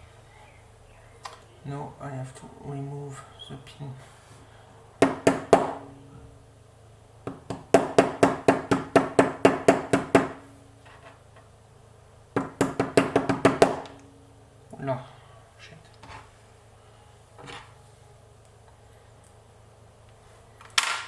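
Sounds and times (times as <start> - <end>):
hammer tapping metal punch: 5.0 - 6.2, 7.2 - 10.6, 12.4 - 14.1.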